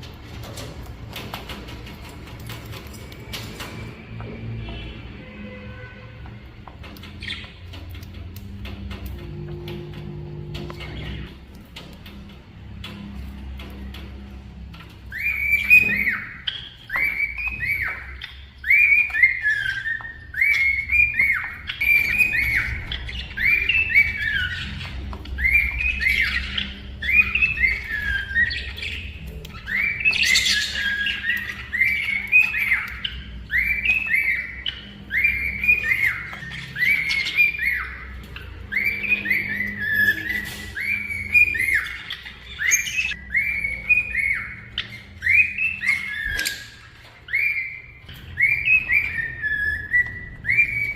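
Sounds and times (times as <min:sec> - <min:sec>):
cockatiel whistling: 0:15.1 - 0:24.6, 0:25.4 - 0:50.9.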